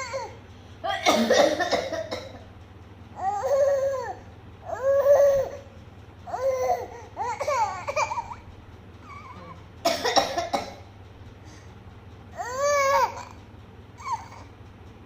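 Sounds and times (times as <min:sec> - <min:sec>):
child coughing: 0:00.9 - 0:02.5, 0:09.9 - 0:10.9.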